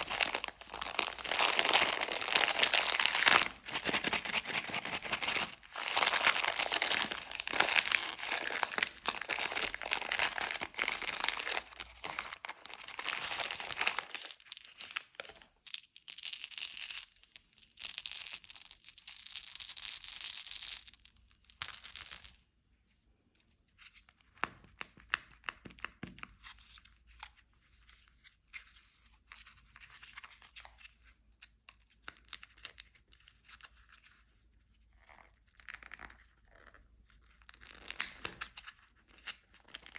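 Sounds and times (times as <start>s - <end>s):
candy wrappers crinkling: 0.0s - 22.4s, 37.4s - 39.9s.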